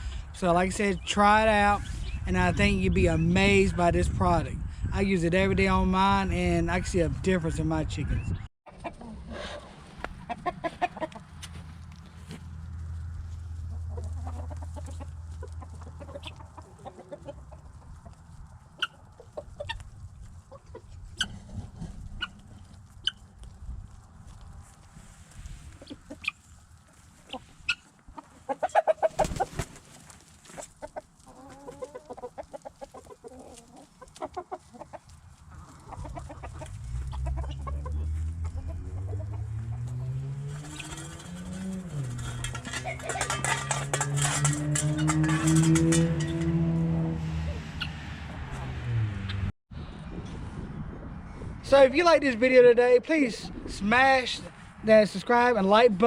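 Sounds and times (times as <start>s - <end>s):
chickens clucking: 8.0s - 12.5s, 13.1s - 23.4s, 25.4s - 46.5s, 47.3s - 48.1s
chicken squawk: 27.2s - 29.6s, 30.4s - 39.4s.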